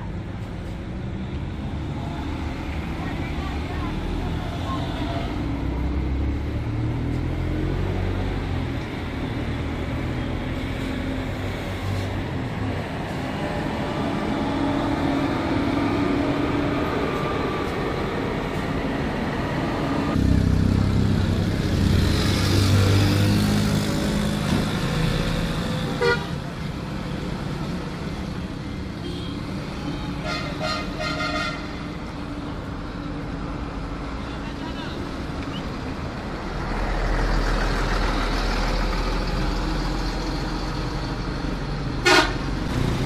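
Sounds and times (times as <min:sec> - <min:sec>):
street traffic: 0:00.0 - 0:43.0
bus engine running: 0:02.8 - 0:43.0
bus horn tooting: 0:26.0 - 0:26.4, 0:30.2 - 0:31.8, 0:42.0 - 0:42.5.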